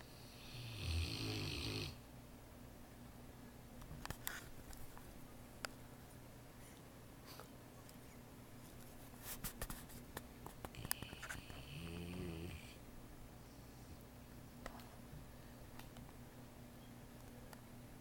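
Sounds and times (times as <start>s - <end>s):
pet snoring: 0.2s - 2.0s, 10.8s - 12.8s.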